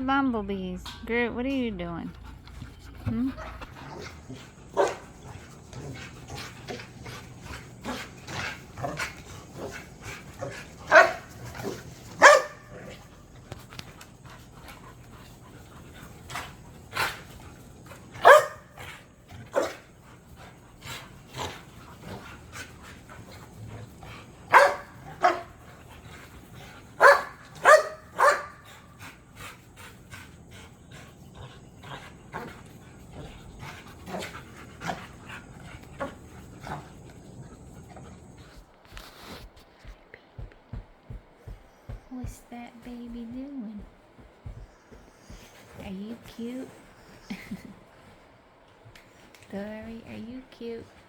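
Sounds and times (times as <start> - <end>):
dog barking: 4.8 - 5.0, 10.9 - 11.3, 12.2 - 13.1, 18.2 - 18.8, 24.5 - 25.6, 27.0 - 28.6.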